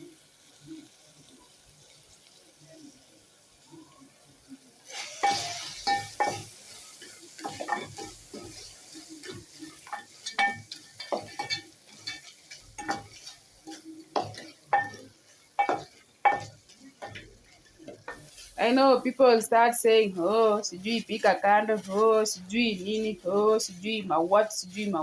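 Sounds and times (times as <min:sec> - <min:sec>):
faint sizzle of frying: 0:00.0 - 0:25.0
metal spoon clinking against pot: 0:05.2 - 0:18.3.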